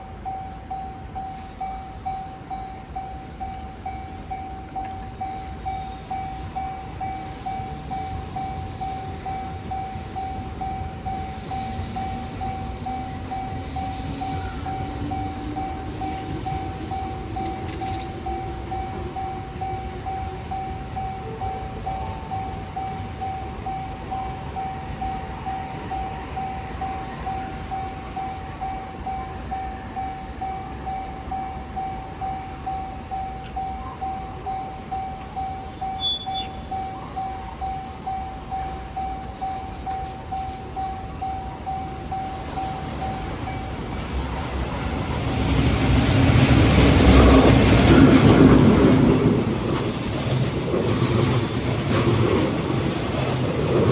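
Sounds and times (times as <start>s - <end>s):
level crossing bell ringing: 14.7s - 44.4s.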